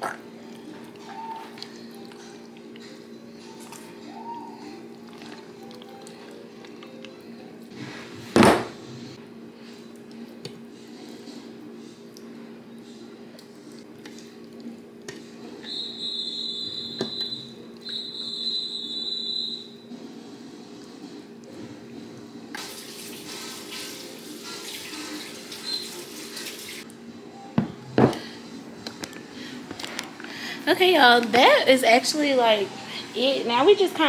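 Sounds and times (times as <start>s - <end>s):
high steady whistling tones: 15.6s - 19.9s
kitchen tap running: 22.6s - 26.8s.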